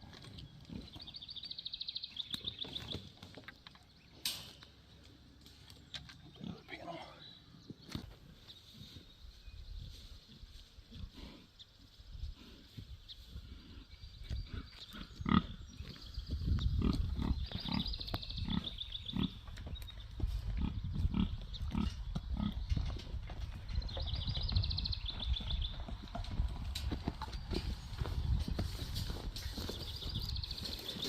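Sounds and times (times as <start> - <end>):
pigs grunting: 6.3 - 7.2, 13.4 - 15.8, 16.7 - 19.5, 20.6 - 22.7.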